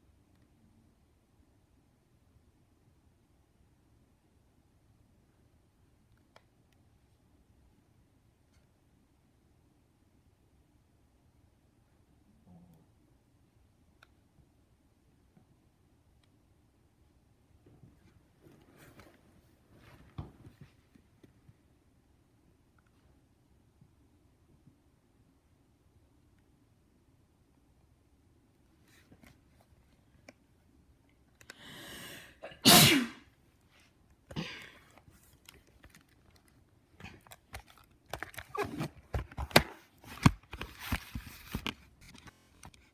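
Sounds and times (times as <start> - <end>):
dog sneezing: 32.4 - 33.3.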